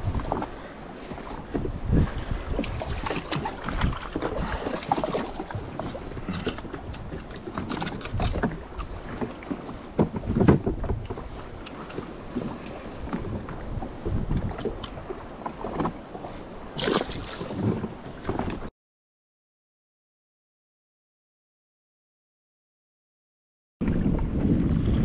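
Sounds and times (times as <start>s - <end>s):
water sloshing: 0.0s - 18.7s
wind buffeting microphone: 0.0s - 18.7s, 23.8s - 25.0s.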